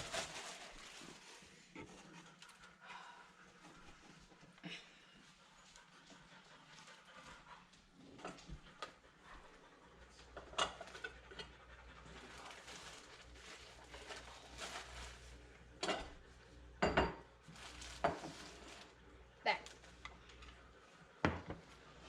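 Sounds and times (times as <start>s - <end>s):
utensils and dishes clinking: 10.4s - 11.6s, 15.8s - 16.2s.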